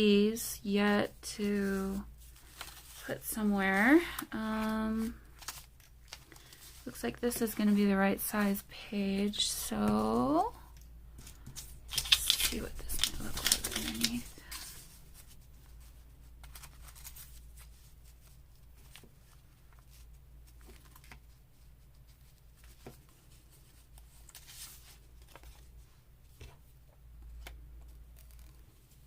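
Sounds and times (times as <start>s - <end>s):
paper rustling and tapping: 11.2s - 14.6s.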